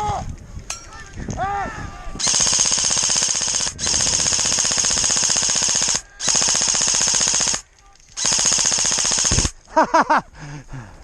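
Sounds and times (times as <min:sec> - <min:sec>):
airsoft gun firing full auto: 0:02.2 - 0:09.6.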